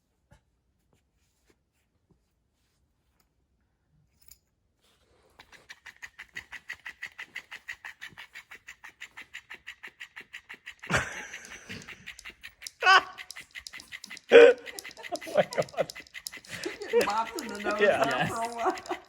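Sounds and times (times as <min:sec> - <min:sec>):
electric fish toy flapping: 0:05.5 - 0:19.0.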